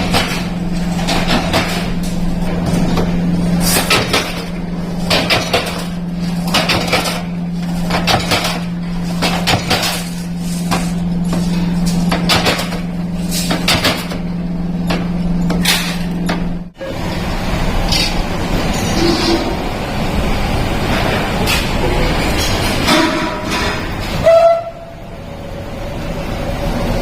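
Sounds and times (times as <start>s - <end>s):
low machine hum: 0.0s - 27.0s
metal cookware clanking: 22.4s - 24.0s.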